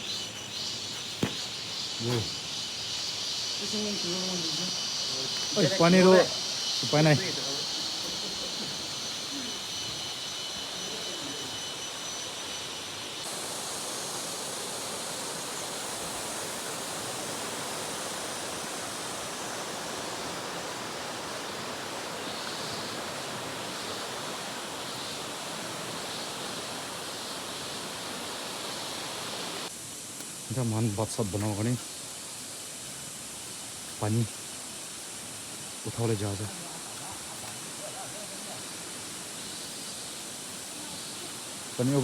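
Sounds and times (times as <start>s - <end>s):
high thin insect-like trill: 0.0s - 42.0s
rushing river water: 13.2s - 29.7s.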